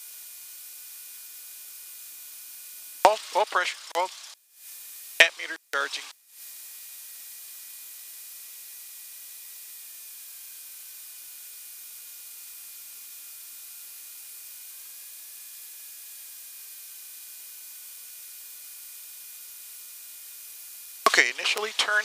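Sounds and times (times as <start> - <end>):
intercom hiss: 3.1 - 4.2, 5.2 - 6.1, 21.1 - 22.0
faint thin whine: 21.1 - 22.0.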